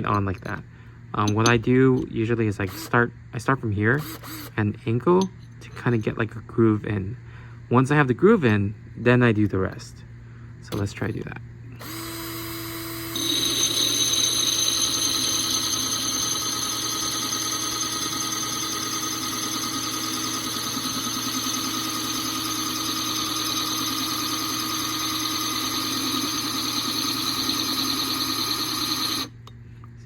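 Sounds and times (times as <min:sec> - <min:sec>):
power drill grinding into ceramic: 0:03.9 - 0:04.6, 0:11.8 - 0:29.4.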